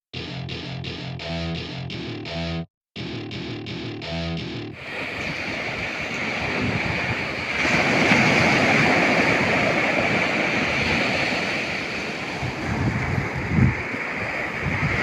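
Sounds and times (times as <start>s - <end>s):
ocean surf breaking: 4.8s - 15.0s
wind buffeting microphone: 4.8s - 15.0s.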